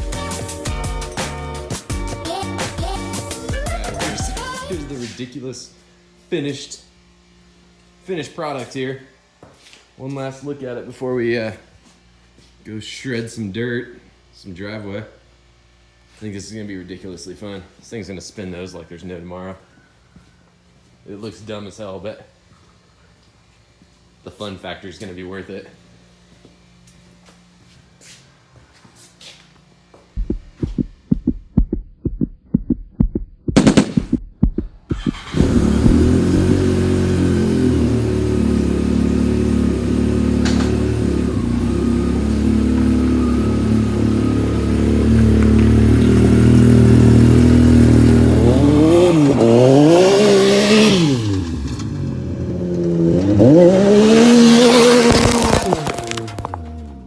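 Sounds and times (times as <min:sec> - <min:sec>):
knocks and clicks: 0:30.2 - 0:35.2
engine starting and revving: 0:34.9 - 0:57.0.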